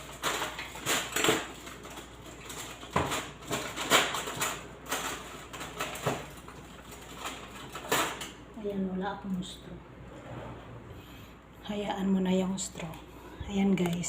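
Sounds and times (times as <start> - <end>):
knocks and rattles of kitchen things: 0.0 - 9.2.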